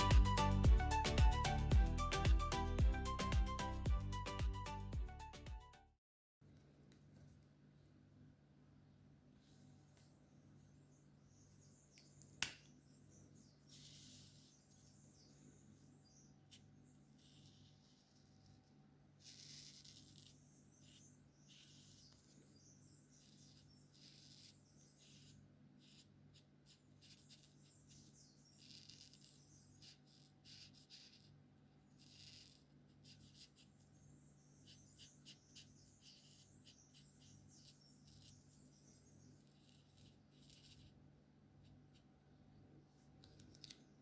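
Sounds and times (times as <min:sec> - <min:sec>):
markers stroking on paper: 0:13.6 - 0:42.1.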